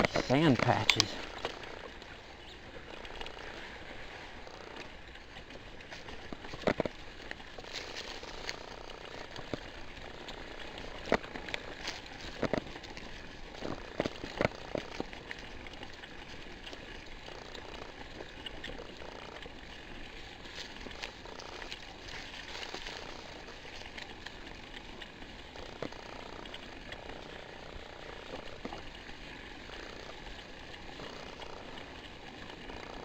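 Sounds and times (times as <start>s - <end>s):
gritty tyre noise on dirt: 0.0s - 33.0s
bike knocking and rattling: 4.3s - 18.3s.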